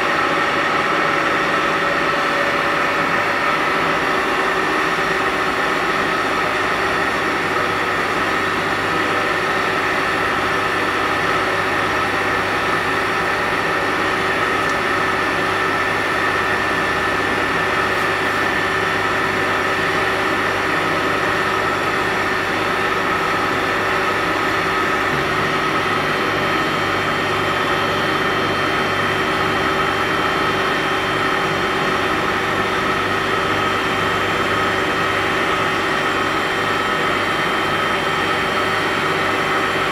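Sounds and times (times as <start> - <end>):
laser machine humming: 12.0 - 38.2.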